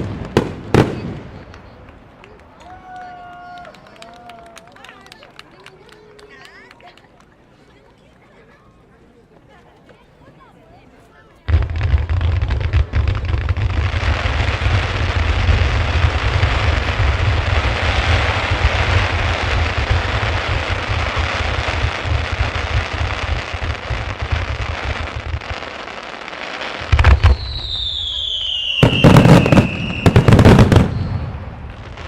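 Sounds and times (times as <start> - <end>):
fireworks bursting: 0.0 - 2.3, 11.5 - 32.0.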